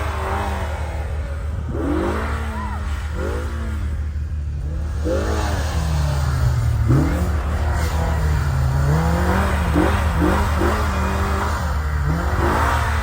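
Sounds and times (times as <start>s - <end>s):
utility vehicle engine revving: 0.0s - 13.0s.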